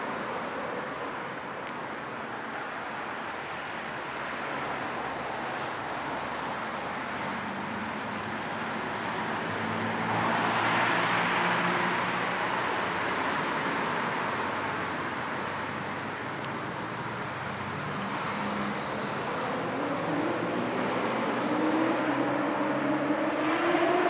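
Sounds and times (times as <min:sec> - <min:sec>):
cars passing: 0:04.2 - 0:24.0.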